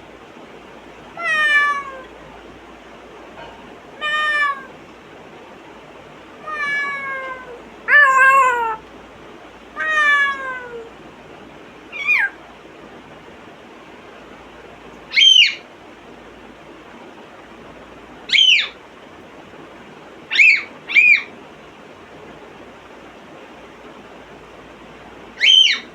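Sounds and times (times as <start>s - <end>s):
parrot mimicking cat meows: 1.2s - 2.1s, 4.0s - 4.8s, 6.4s - 8.8s, 9.8s - 10.9s, 11.9s - 12.4s, 25.4s - 25.9s.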